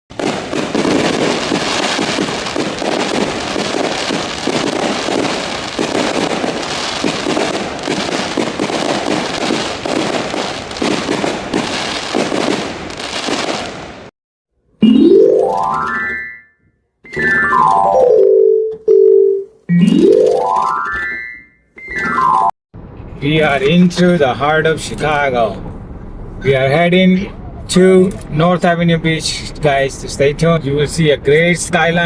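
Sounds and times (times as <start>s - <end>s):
fireworks bangs and crackling: 0.1s - 14.1s.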